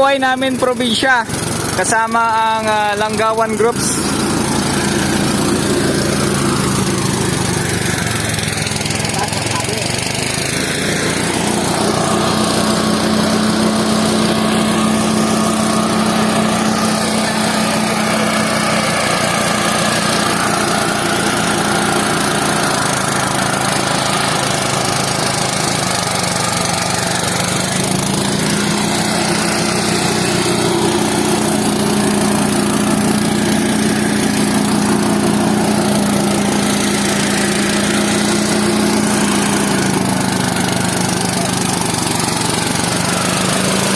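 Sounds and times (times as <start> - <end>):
small engine running: 0.0 - 43.9.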